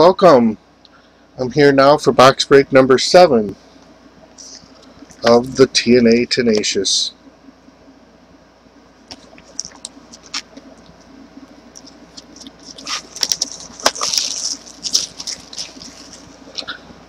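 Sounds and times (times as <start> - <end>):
packaging crinkling and clicking: 11.8 - 16.7.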